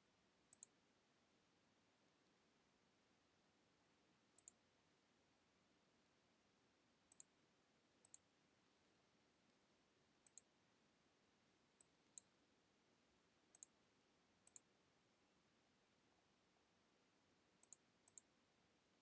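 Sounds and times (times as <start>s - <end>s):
computer mouse clicks: 0.5s - 0.7s, 4.4s - 4.6s, 7.1s - 7.3s, 8.0s - 8.2s, 10.2s - 10.5s, 11.8s - 12.3s, 13.5s - 13.7s, 14.5s - 14.7s, 17.6s - 18.3s.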